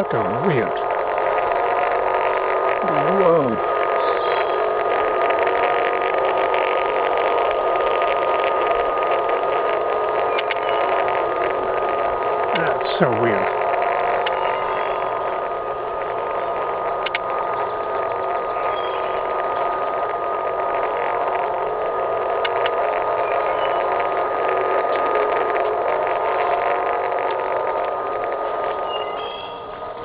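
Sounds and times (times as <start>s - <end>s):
mechanical drone overhead: 0.0s - 30.0s
thin steady tone: 0.0s - 30.0s.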